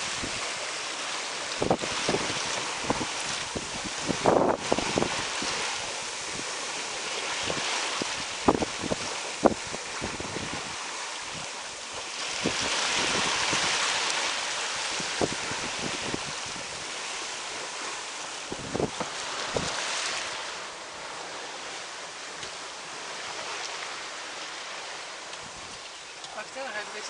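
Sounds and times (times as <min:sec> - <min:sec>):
water rushing past hull: 0:00.0 - 0:27.0
wind buffeting microphone: 0:00.0 - 0:27.0.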